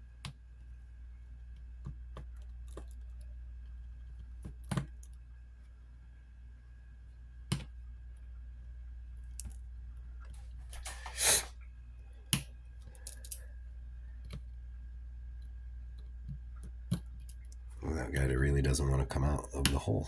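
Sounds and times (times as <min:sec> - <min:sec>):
steady low hum: 0:00.0 - 0:20.0
brief hiss: 0:10.8 - 0:11.5.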